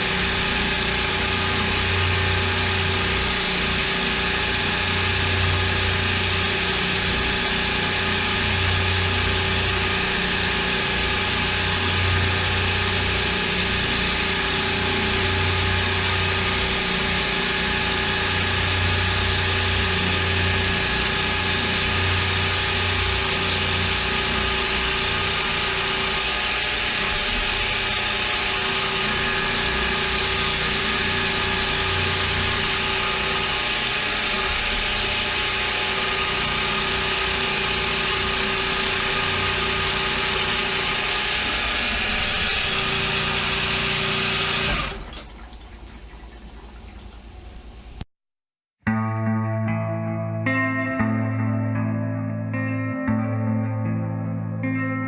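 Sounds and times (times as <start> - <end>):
pulsing low hum: 0.0 - 44.9
cnc mill motor whine: 0.0 - 45.2.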